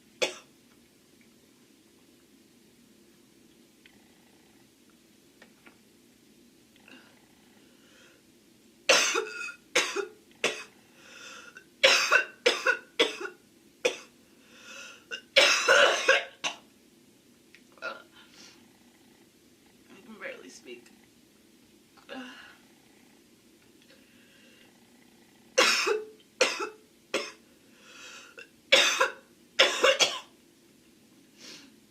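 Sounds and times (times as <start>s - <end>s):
girl coughing: 8.9s - 10.7s, 11.8s - 14.1s, 15.2s - 16.6s, 25.6s - 27.4s, 28.7s - 30.3s.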